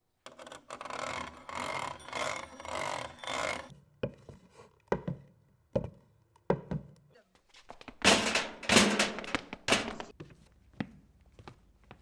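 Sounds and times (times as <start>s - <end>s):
sharp knocks: 8.1s - 10.1s.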